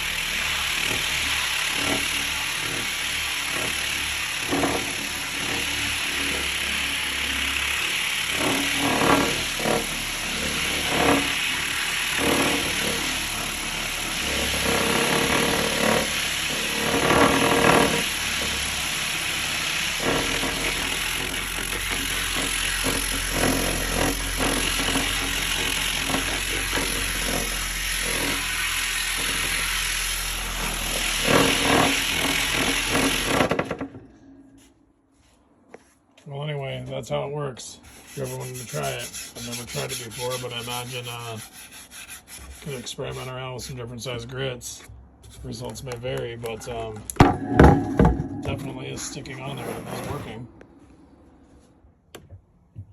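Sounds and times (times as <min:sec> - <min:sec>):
electric buffer sanding wood: 0:00.0 - 0:33.6, 0:37.9 - 0:43.3.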